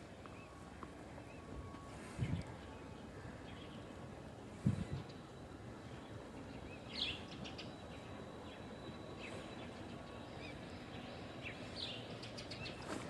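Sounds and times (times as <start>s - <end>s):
outdoor background noise: 0.0s - 13.0s
small birds chirping: 4.7s - 13.0s.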